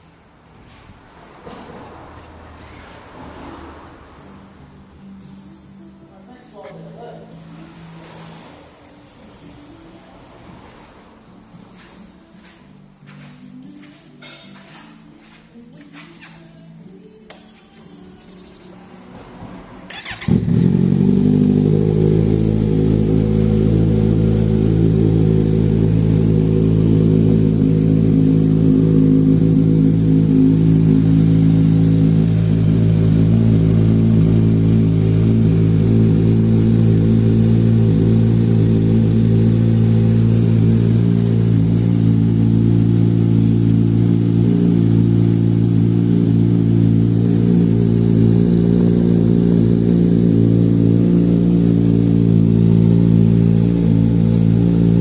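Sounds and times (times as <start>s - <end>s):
motorcycle engine starting and idling: 17.3s - 55.0s.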